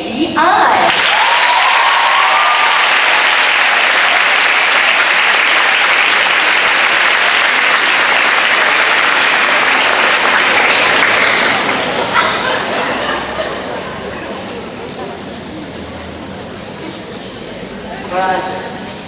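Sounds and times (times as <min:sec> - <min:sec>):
audience applauding: 0:00.9 - 0:15.5.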